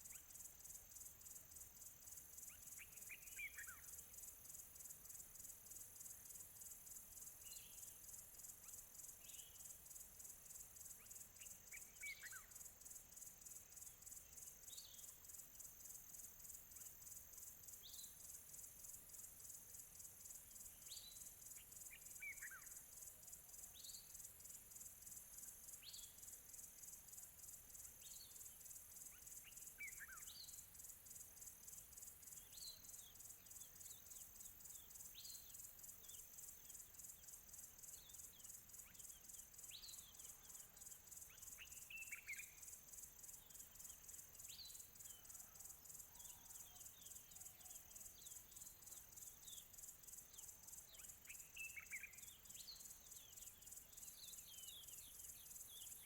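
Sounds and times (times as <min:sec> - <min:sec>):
crickets chirping: 0:00.0 - 0:56.0
bird chirps: 0:37.9 - 0:42.7, 0:43.3 - 0:56.0.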